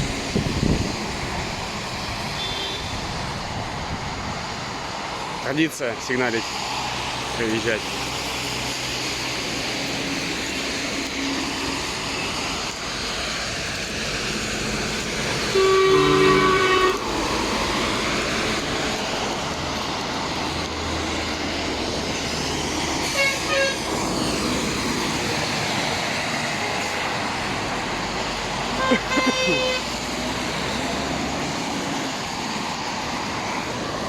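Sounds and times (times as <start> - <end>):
road traffic noise: 0.0 - 34.0
vehicle horn: 2.4 - 3.0, 15.5 - 17.0, 23.0 - 23.9, 28.8 - 29.9.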